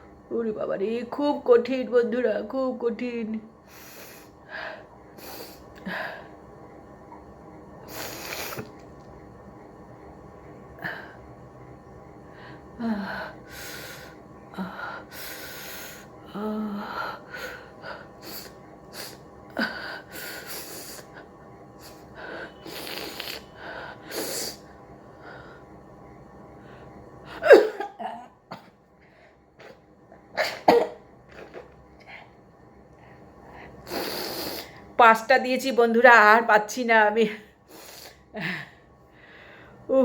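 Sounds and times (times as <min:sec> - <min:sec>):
person sniffing and breathing: 0:03.7 - 0:04.4, 0:07.9 - 0:08.8, 0:21.8 - 0:24.6, 0:33.6 - 0:34.9, 0:37.7 - 0:38.3
loud sneeze: 0:30.4 - 0:31.0.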